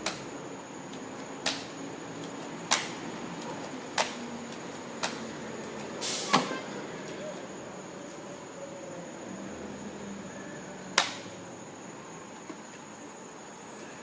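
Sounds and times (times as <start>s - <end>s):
short hiss: 6.0s - 6.6s.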